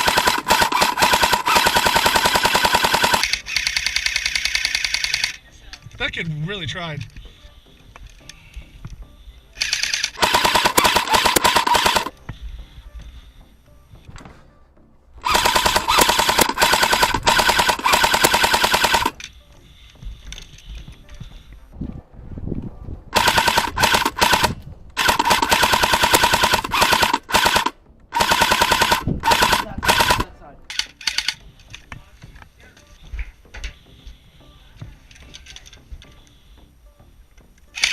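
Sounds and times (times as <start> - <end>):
airsoft machine gun bursts: 0.0 - 5.4, 9.6 - 12.1, 15.2 - 19.2, 23.2 - 31.4.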